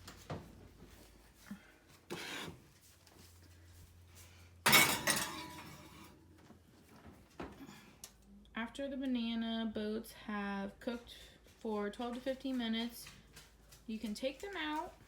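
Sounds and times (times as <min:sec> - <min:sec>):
baking dish scraping: 0:02.1 - 0:02.6, 0:04.7 - 0:06.2
baking dish clanking: 0:04.7 - 0:06.1.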